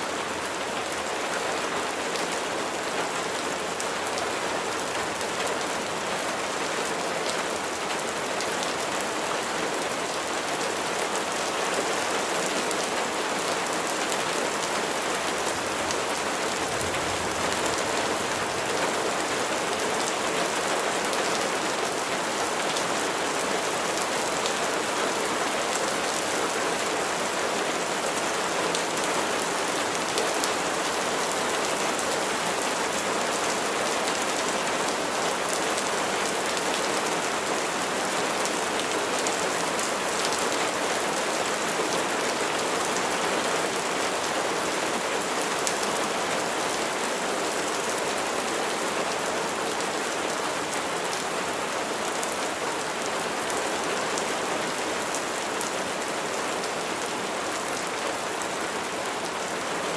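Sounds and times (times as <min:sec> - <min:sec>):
steady rain pattering: 0:00.0 - 0:59.9.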